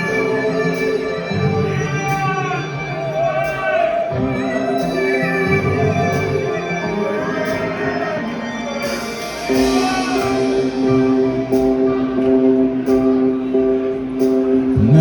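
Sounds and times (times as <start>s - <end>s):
held low note: 0.0s - 15.0s
light cymbal strokes: 4.6s - 14.5s.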